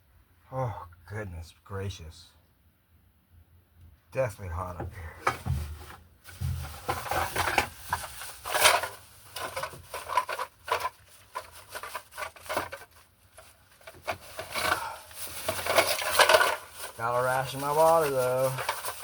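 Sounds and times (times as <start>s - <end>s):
rustling and scraping: 4.7s - 19.0s.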